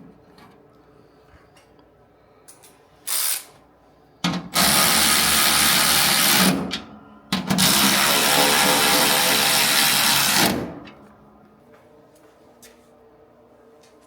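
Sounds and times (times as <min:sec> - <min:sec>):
power tool running in bursts: 0:04.6 - 0:06.6, 0:07.6 - 0:10.7.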